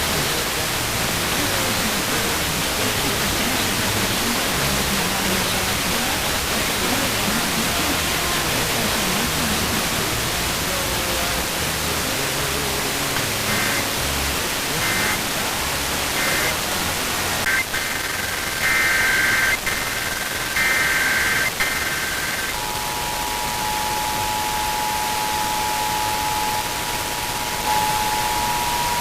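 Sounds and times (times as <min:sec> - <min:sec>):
radio static hiss: 0:00.0 - 0:29.0
data tone bursts: 0:13.2 - 0:15.4, 0:16.0 - 0:16.7, 0:17.4 - 0:29.0.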